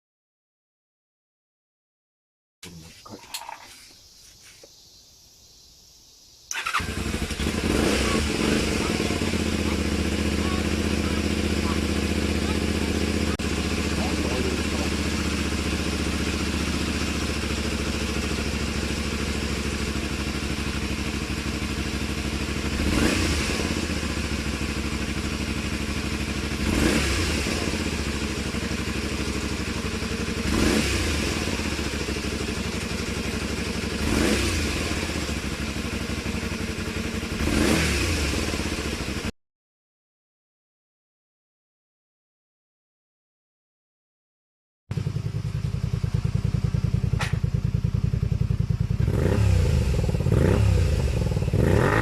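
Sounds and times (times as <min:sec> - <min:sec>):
motorcycle engine idling and revving: 0:06.5 - 0:39.4, 0:44.9 - 0:52.0.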